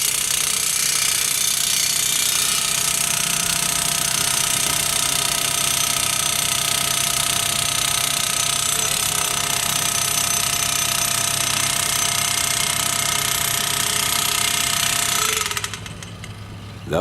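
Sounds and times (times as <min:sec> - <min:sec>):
post driver pounding: 0:00.0 - 0:16.4.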